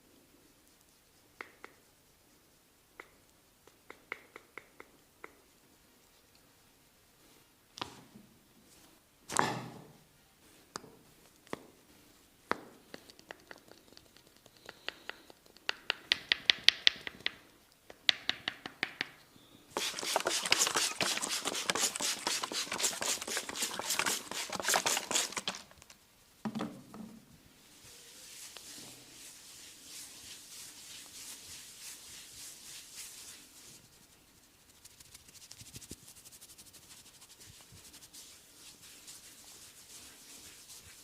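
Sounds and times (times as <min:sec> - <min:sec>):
percussive massage tapping: 0:03.0 - 0:05.4, 0:12.5 - 0:17.4.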